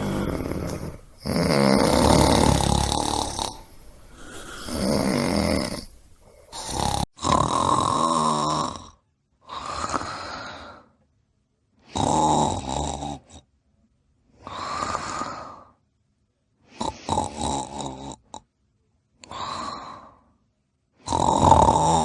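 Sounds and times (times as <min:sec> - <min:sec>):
loud snoring: 0:00.0 - 0:10.7, 0:11.9 - 0:13.4, 0:14.5 - 0:15.6, 0:16.8 - 0:18.4, 0:21.0 - 0:22.0.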